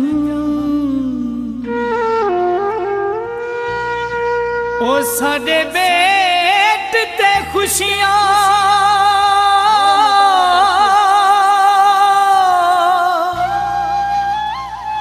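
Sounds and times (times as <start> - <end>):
voice singing with vibrato: 0.0 - 1.9, 4.8 - 14.8.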